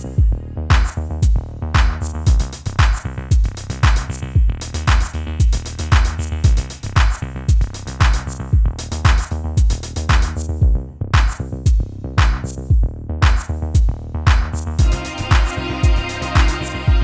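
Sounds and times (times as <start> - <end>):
electronic music with drum-machine beat: 13.2 - 17.0.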